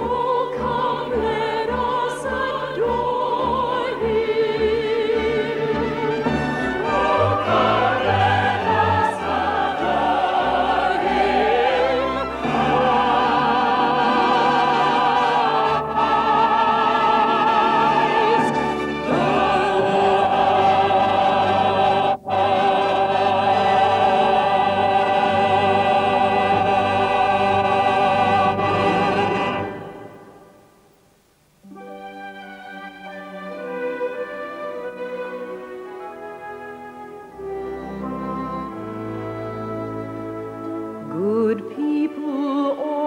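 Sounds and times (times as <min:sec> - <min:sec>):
operatic singing with vibrato: 0:00.0 - 0:30.8, 0:31.8 - 0:43.0
orchestra playing: 0:05.3 - 0:21.4, 0:31.7 - 0:41.5.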